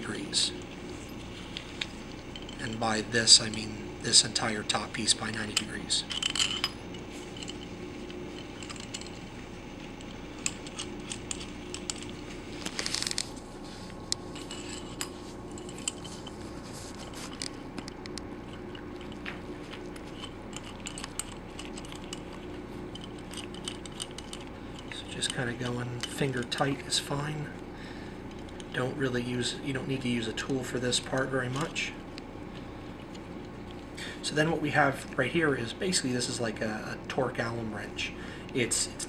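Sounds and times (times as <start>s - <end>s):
light metal clicks and clinks: 0.0s - 13.3s, 14.1s - 27.6s
steady room hum: 0.0s - 39.0s.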